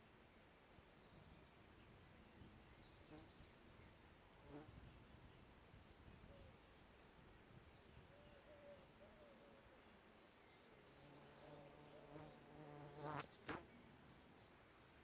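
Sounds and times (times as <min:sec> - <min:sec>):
flying insect buzzing: 0:11.1 - 0:13.7.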